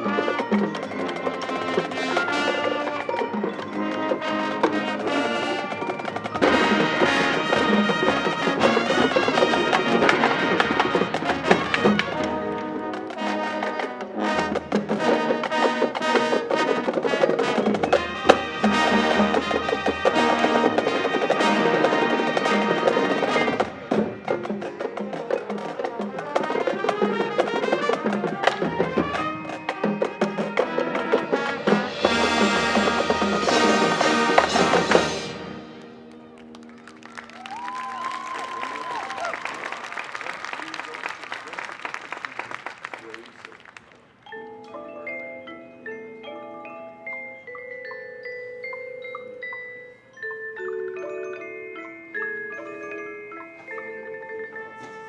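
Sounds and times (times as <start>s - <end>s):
marching band playing: 0.0s - 43.5s, 50.8s - 55.0s
sharp percussion clicks: 47.1s - 54.2s.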